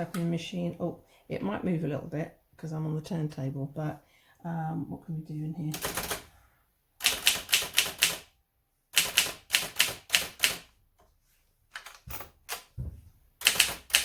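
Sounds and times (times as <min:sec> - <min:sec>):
manual typewriter typing: 0:05.7 - 0:06.3, 0:07.0 - 0:08.3, 0:08.9 - 0:10.7, 0:11.8 - 0:12.7, 0:13.4 - 0:14.0.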